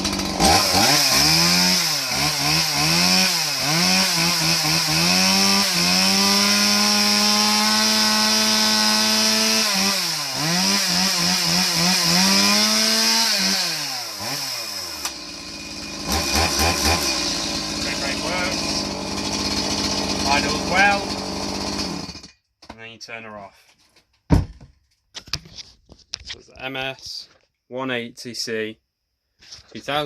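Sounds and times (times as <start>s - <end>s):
chainsaw revving and idling: 0.0s - 22.3s.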